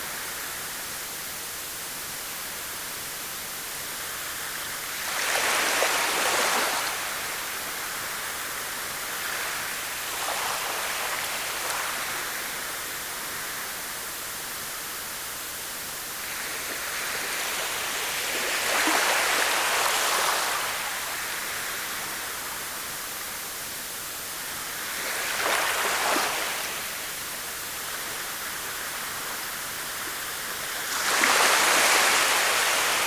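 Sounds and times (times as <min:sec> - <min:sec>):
waves washing on shore: 0:04.2 - 0:13.9, 0:16.2 - 0:23.4, 0:24.4 - 0:33.0
rush of water: 0:24.4 - 0:33.0.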